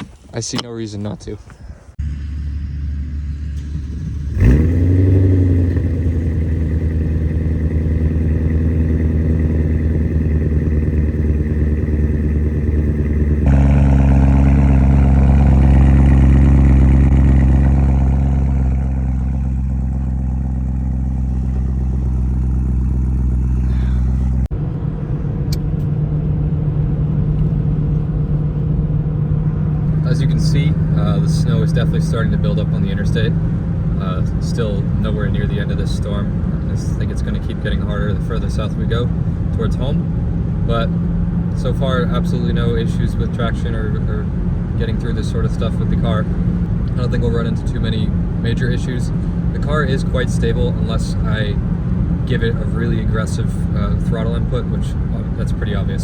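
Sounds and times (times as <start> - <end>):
car engine starting and idling: 0.0 - 56.0.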